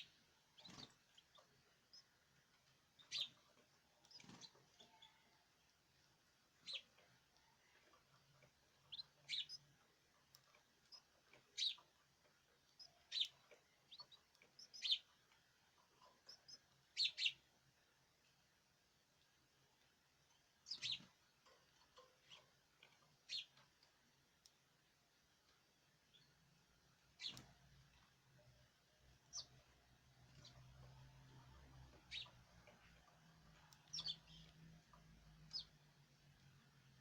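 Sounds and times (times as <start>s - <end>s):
small birds chirping: 0.0s - 37.0s.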